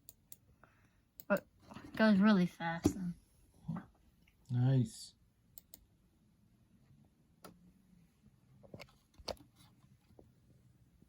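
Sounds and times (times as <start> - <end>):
faint mouse clicks: 5.5 - 5.9.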